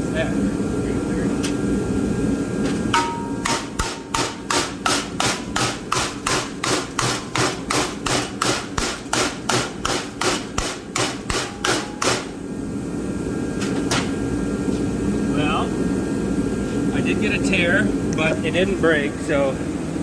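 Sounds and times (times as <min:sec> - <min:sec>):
hammer striking metal plate: 0:02.9 - 0:12.4.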